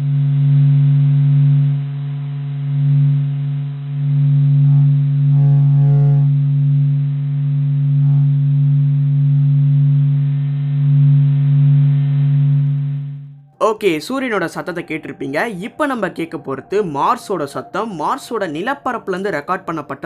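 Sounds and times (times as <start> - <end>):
deep steady hum: 0.0 - 20.0.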